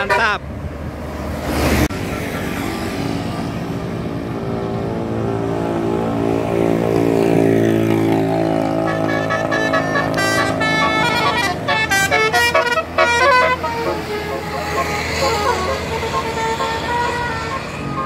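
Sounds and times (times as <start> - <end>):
multi-tone bus horn: 0.0 - 0.4, 8.4 - 18.0.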